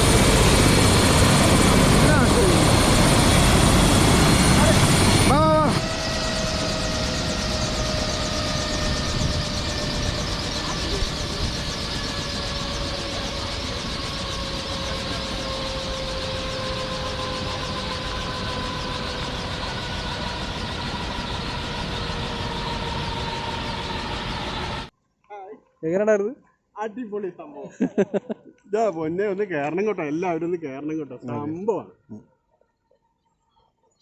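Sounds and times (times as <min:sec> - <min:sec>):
helicopter engine and rotor: 0:00.0 - 0:24.9.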